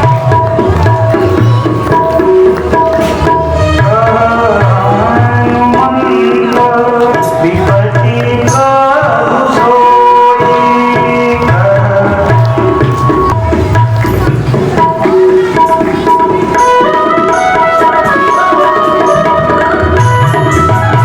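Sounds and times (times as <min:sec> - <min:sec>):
tabla beat: 0:00.0 - 0:21.0
sustained melodic notes: 0:12.0 - 0:21.0.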